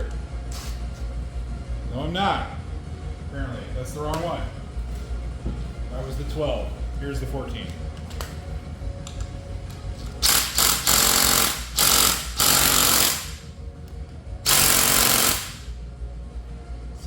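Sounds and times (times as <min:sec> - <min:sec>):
impact wrench hammering: 0:10.2 - 0:13.5, 0:14.5 - 0:15.7.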